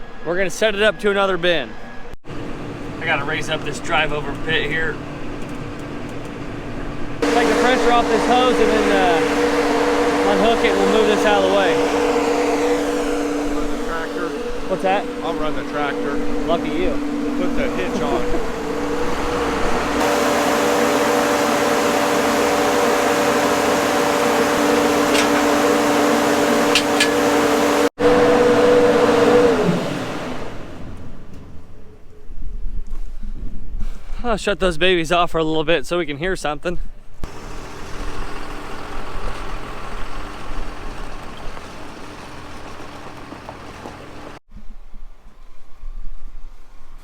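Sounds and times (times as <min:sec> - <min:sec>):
farm machinery droning: 0:02.3 - 0:05.4, 0:06.4 - 0:32.0, 0:37.2 - 0:44.4.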